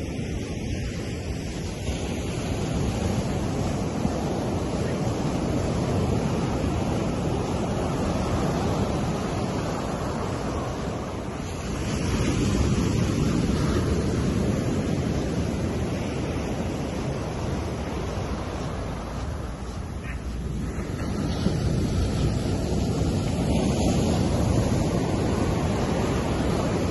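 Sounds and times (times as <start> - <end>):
ocean waves breaking on beach: 0.0 - 26.9.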